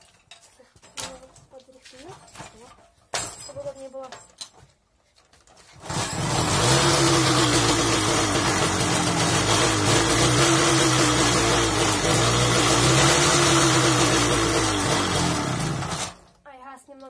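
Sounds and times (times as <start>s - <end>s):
two-stroke moped engine running: 5.8s - 16.2s.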